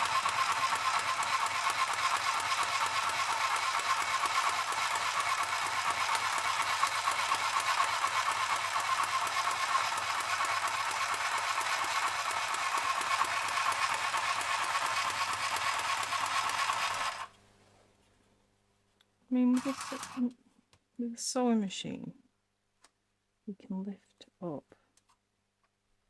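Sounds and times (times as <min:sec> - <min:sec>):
sewing machine stitching rattle: 0:00.0 - 0:17.3, 0:19.5 - 0:20.3.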